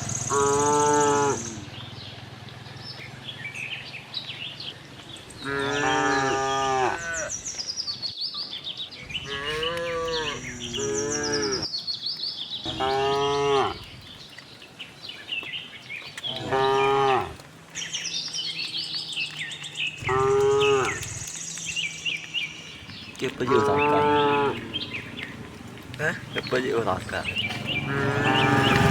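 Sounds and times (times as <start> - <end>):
cows mooing: 0.0 - 1.7, 5.4 - 7.3, 9.2 - 11.7, 12.6 - 13.9, 16.3 - 17.4, 20.0 - 21.3, 22.8 - 28.9
birds chirping: 0.0 - 28.9.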